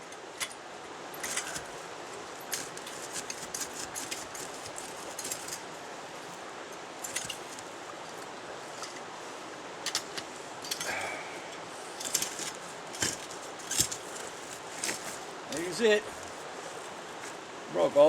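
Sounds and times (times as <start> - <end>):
running water: 0.0 - 18.0.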